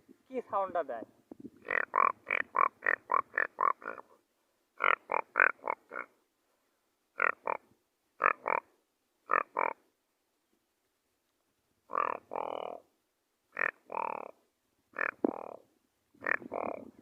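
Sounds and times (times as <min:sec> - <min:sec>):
man imitating frog croaks: 0:01.6 - 0:04.1, 0:04.8 - 0:06.2, 0:07.2 - 0:07.6, 0:08.2 - 0:08.7, 0:09.3 - 0:09.8, 0:11.9 - 0:12.9, 0:13.5 - 0:14.4, 0:15.0 - 0:15.6, 0:16.2 - 0:17.0.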